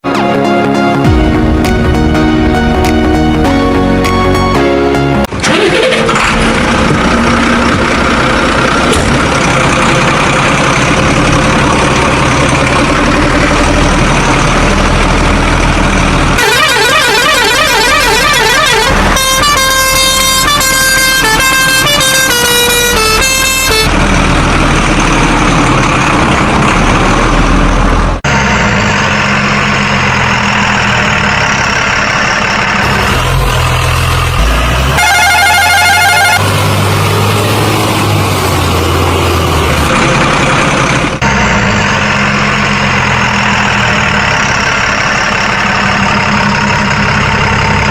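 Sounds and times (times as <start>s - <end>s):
truck engine running: 0.0s - 47.9s
warbling siren-like horn: 16.4s - 23.9s, 34.9s - 36.7s
stepped horn tones: 16.4s - 24.0s, 32.8s - 36.8s.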